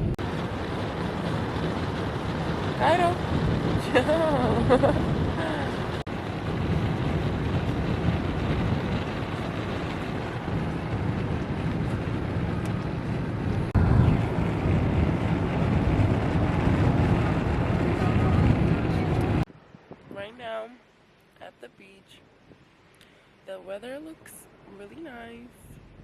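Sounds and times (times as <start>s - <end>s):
wind buffeting microphone: 0.0s - 20.7s.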